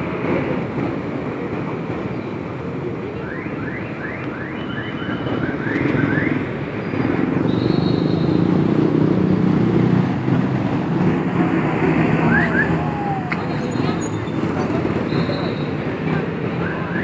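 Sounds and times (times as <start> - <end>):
road traffic: 0.0 - 17.0
heavy vehicle engine passing: 6.5 - 17.0.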